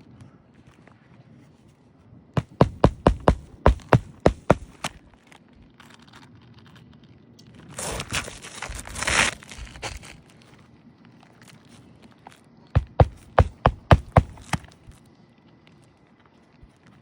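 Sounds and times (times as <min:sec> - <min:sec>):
hammer blows on nail: 0:02.4 - 0:04.9
shingle scratchy rustling: 0:02.4 - 0:05.0, 0:12.8 - 0:15.0.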